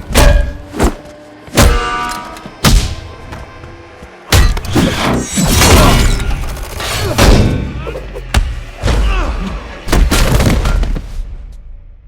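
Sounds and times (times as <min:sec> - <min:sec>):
music: 0:04.3 - 0:12.0.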